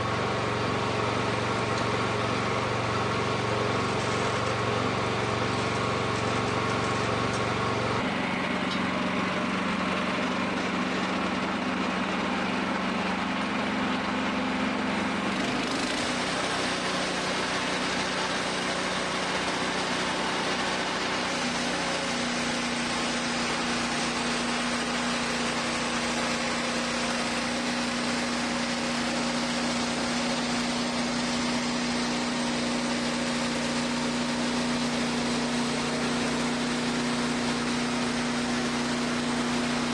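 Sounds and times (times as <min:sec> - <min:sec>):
sawmill engine running: 0:00.0 - 0:39.9
band blade sawing through log: 0:14.9 - 0:39.9.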